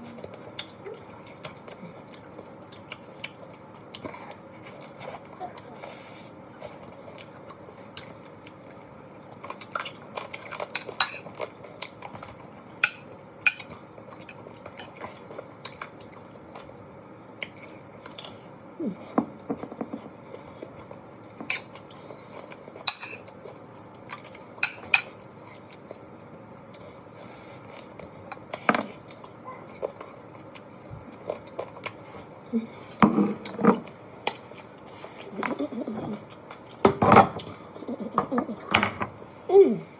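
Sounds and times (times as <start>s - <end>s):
chewing: 0.1s - 12.8s, 26.7s - 36.8s.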